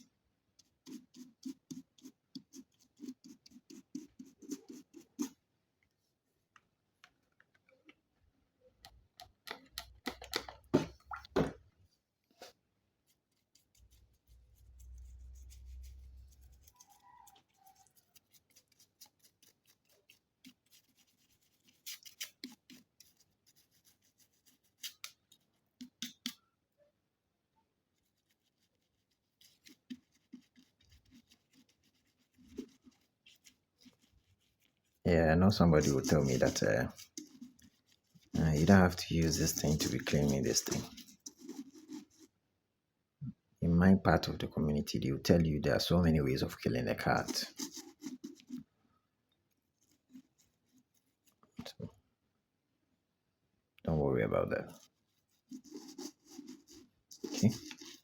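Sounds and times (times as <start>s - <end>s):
cleaning tool scratching and clicking: 35.6s - 37.5s, 38.3s - 42.2s.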